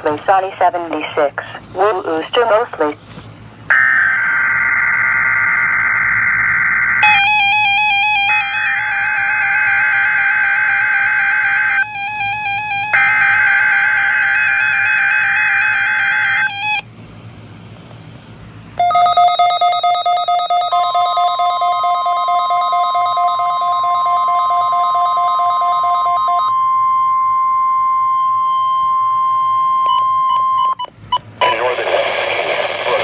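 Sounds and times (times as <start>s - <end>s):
warbling two-tone data screech: 3.7s - 7.6s
pulsing electronic alarm beep: 3.7s - 16.8s, 18.8s - 30.9s
steady warning tone: 3.7s - 17.0s, 18.8s - 33.0s.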